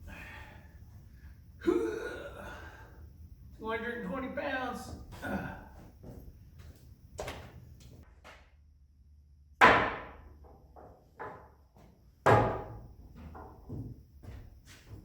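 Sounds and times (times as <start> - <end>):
loud sharp knocks: 9.6 - 11.5, 12.3 - 12.8.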